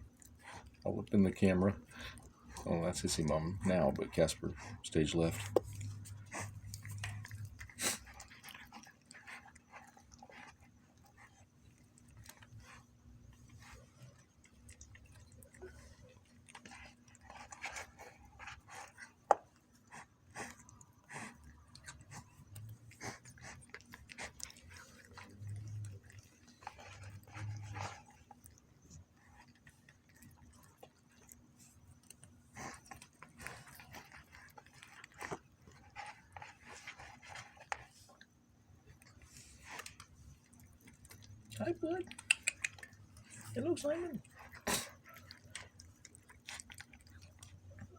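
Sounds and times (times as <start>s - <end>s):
cats chewing crunchy food: 0.0s - 47.9s.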